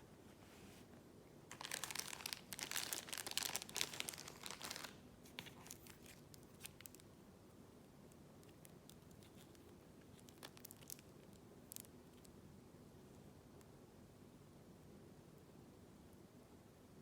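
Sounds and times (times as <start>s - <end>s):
rustling: 0.2s - 7.1s
plastic wrapping crinkling and tearing: 1.5s - 7.1s, 8.4s - 12.3s.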